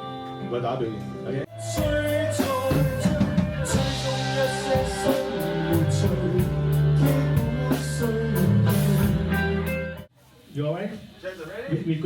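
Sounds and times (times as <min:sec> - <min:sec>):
guitar: 0:00.0 - 0:10.1
bass line: 0:01.5 - 0:10.1
drum kit beat: 0:01.5 - 0:10.1.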